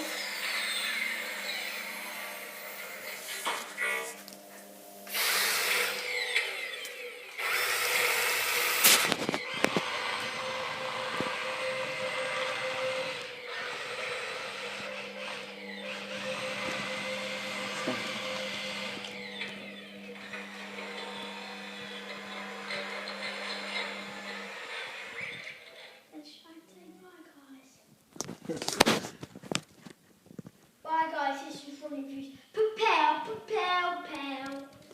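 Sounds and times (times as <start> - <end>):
toy electric motors whirring: 0.0 - 4.4, 5.0 - 26.1, 34.0 - 34.9.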